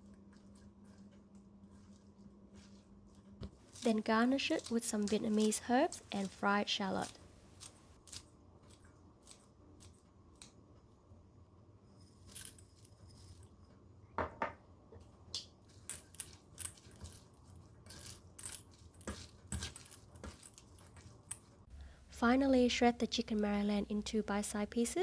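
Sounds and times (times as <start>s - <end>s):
crisp clicks and rustles of food: 0.1s - 10.6s.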